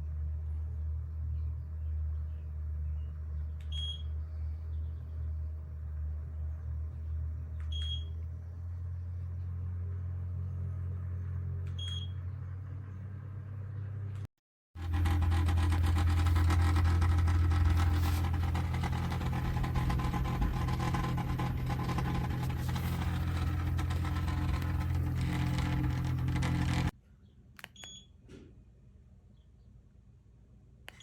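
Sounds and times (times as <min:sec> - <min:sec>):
ceiling fan running: 0:14.8 - 0:26.9.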